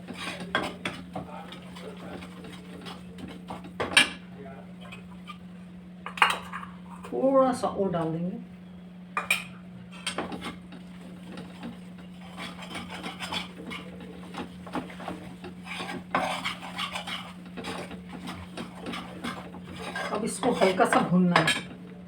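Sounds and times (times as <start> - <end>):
spoon scraping metal pan: 0.0 - 3.7, 11.3 - 21.7
steady low hum: 0.0 - 22.0.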